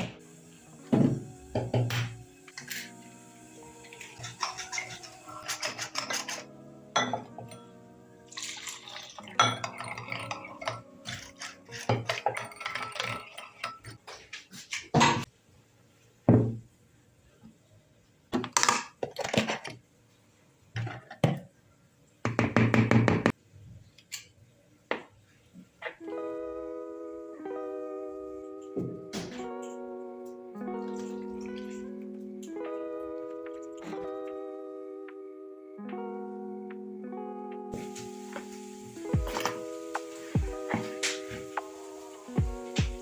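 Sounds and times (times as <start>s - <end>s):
background music: 0.0s - 14.0s, 26.0s - 43.0s
utensils clinking against dishes: 3.9s - 7.4s, 8.4s - 15.3s.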